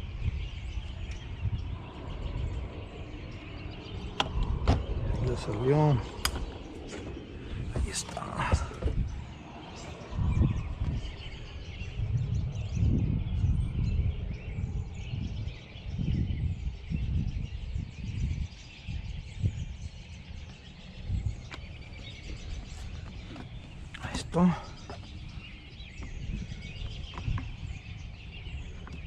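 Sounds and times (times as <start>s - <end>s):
irregular low rumble: 0.0s - 18.0s
faint birds chirping: 0.0s - 29.0s
wind buffeting microphone: 0.0s - 29.0s.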